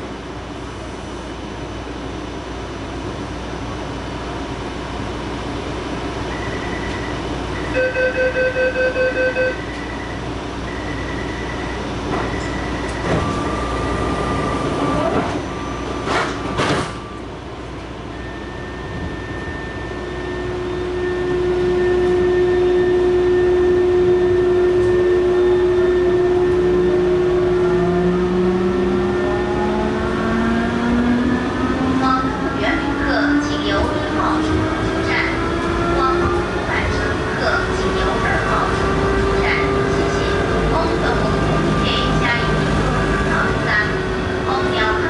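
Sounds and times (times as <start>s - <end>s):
train inverter whine: 0.0s - 45.0s
electronic warning chime beeping: 6.3s - 13.9s.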